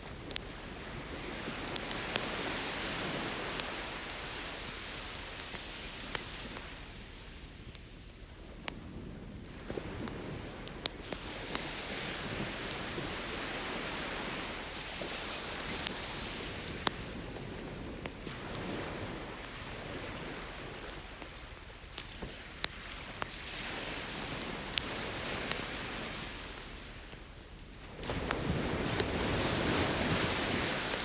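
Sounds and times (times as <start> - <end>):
ocean waves washing: 0.0 - 7.5, 8.6 - 21.5, 27.9 - 31.0
campfire crackling and popping: 0.0 - 31.0.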